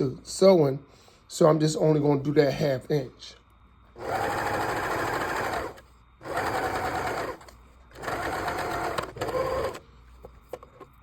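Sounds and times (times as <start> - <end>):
overlock sewing machine running: 4.0 - 9.8.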